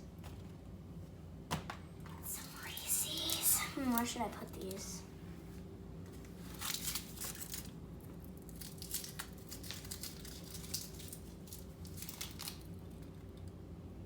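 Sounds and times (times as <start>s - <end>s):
candy wrappers crinkling and tearing: 2.3s - 5.0s, 6.1s - 13.5s.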